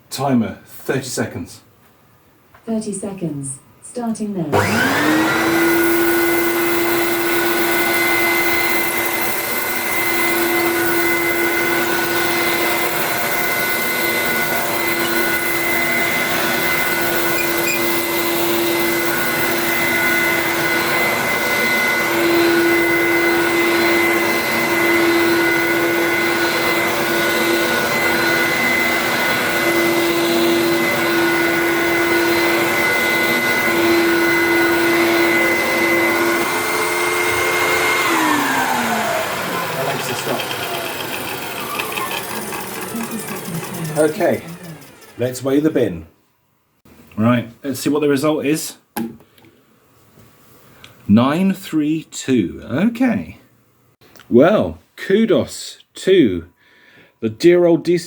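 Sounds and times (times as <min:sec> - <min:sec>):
upright vacuum cleaner running: 0:04.5 - 0:45.8.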